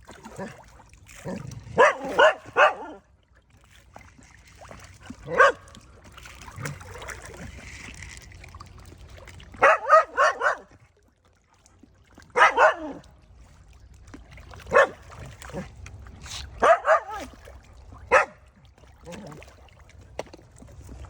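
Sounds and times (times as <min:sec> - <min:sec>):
dog barking: 0:01.8 - 0:03.1, 0:05.2 - 0:05.7, 0:09.6 - 0:10.7, 0:12.3 - 0:13.0, 0:14.7 - 0:15.0, 0:16.6 - 0:17.3, 0:18.1 - 0:18.4.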